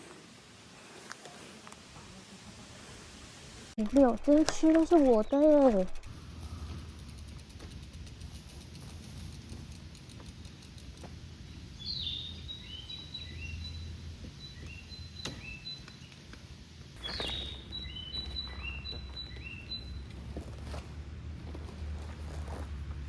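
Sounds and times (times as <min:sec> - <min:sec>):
songbird singing: 0:03.8 - 0:06.1, 0:11.5 - 0:16.2, 0:17.0 - 0:20.4.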